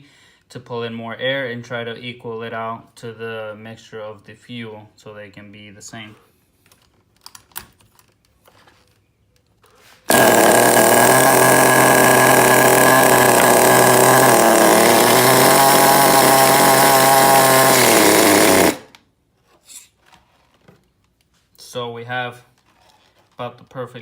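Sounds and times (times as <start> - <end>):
rc car engine running hard: 10.1 - 18.9.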